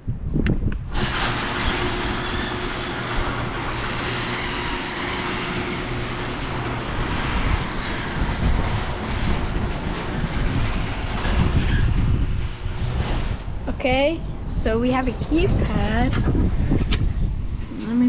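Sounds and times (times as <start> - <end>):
garage door rumbling and rattling: 0.0 - 18.0
garage door opener running: 0.8 - 13.7.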